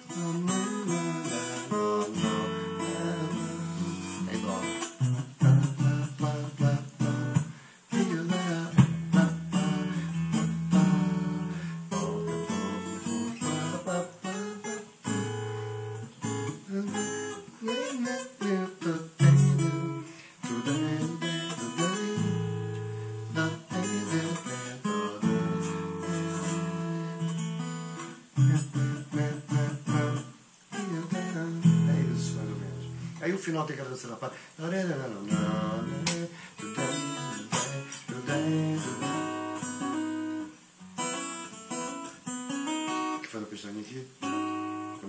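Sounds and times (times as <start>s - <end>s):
acoustic guitar playing: 0.0s - 45.0s.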